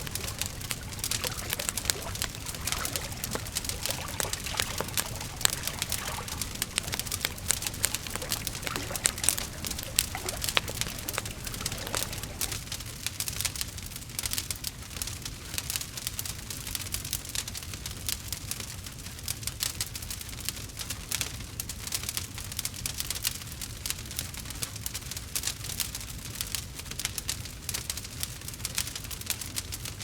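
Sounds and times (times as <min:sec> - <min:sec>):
wood fire crackling: 0:00.0 - 0:12.6.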